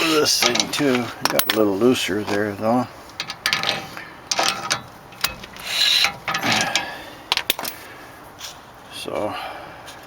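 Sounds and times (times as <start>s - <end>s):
brake pads scraping rotor: 0.0s - 7.4s
hand tool clicks: 4.3s - 7.8s.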